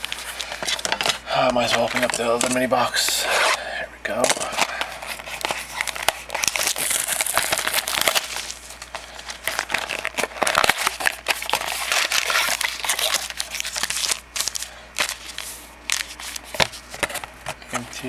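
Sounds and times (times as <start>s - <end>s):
packaging crinkling and snapping: 0.0s - 17.8s
box being torn open: 4.2s - 8.6s, 9.4s - 15.2s.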